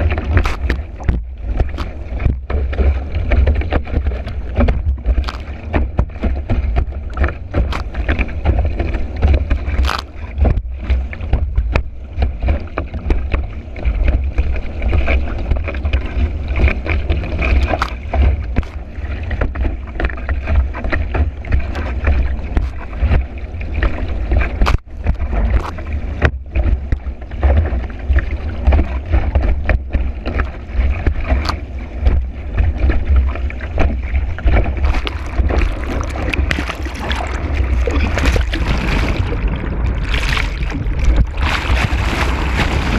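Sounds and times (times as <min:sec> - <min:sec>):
board slapping water: 0:00.0 - 0:42.9
water rushing: 0:00.0 - 0:42.9
wind buffeting microphone: 0:31.9 - 0:42.9.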